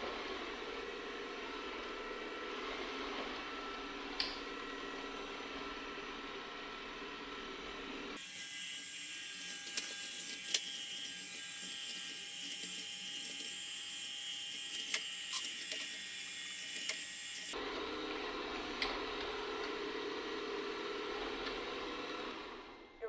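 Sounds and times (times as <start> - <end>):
robot vacuum whirring: 9.0 - 23.0.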